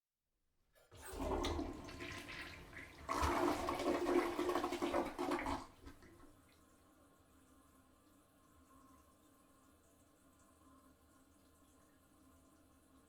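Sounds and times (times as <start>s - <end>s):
toilet flushing: 0.8s - 6.8s.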